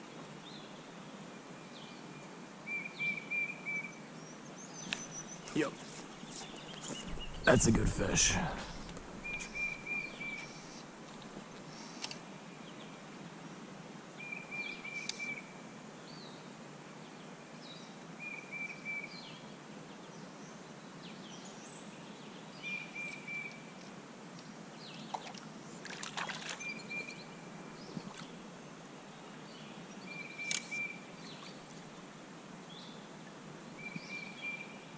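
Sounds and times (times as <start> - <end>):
birds chirping: 4.3 - 10.9
creek flowing: 4.9 - 11.9, 25.2 - 28.6
bird trilling: 6.9 - 10.6.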